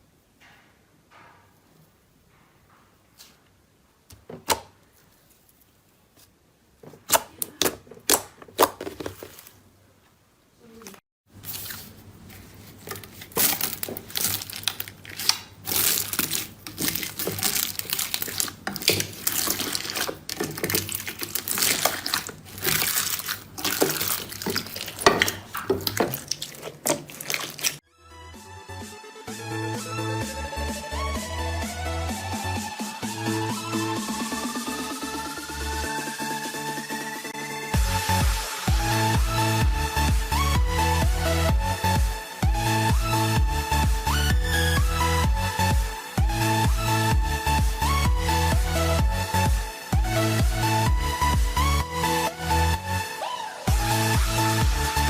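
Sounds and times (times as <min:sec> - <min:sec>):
slime crackling and popping: 0:12.6 - 0:27.8.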